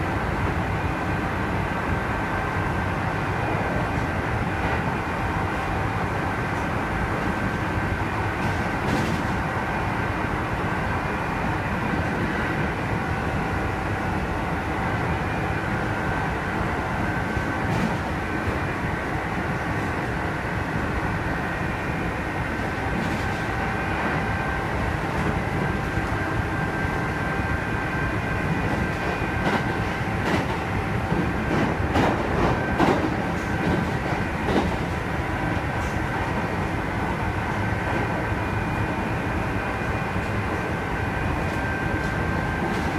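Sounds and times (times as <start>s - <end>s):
train running noise from inside: 0.0s - 42.9s
train wheels clacking: 8.4s - 9.4s, 28.5s - 35.0s.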